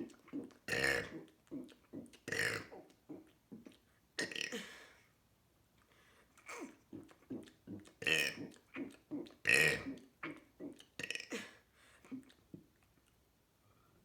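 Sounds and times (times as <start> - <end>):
person burping: 4.2 - 4.8.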